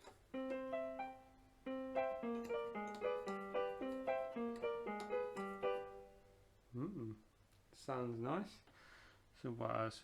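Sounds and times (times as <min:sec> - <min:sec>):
electronic keyboard notes: 0:00.3 - 0:06.4.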